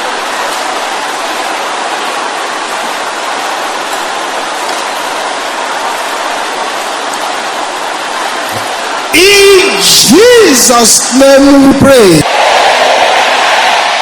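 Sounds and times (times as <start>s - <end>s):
congregation praying aloud: 9.1s - 14.0s.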